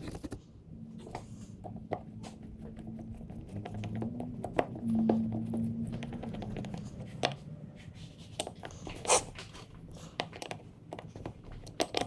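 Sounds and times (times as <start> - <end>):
low steady hum: 0.0 - 12.0
hand tools and parts clicking: 8.4 - 12.0.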